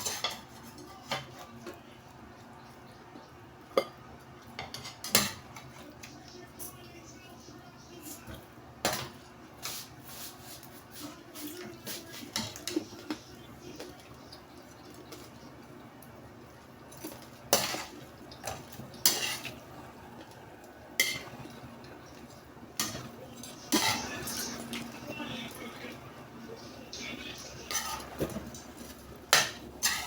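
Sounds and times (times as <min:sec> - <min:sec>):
metal utensil scraping a pot: 0:19.0 - 0:19.6, 0:27.6 - 0:28.2, 0:29.3 - 0:30.0.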